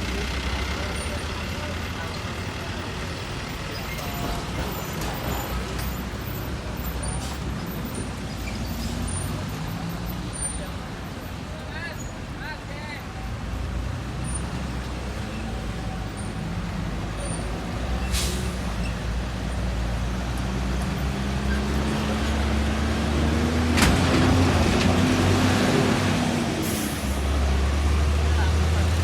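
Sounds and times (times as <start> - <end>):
bus engine running: 0.0 - 29.0
air brake hisses: 18.0 - 18.9, 26.6 - 27.3.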